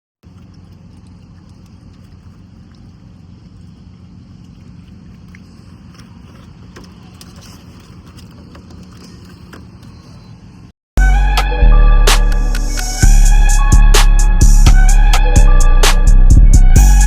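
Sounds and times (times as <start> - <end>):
low steady rumble: 0.2 - 17.0
loud music with deep bass: 11.0 - 17.0.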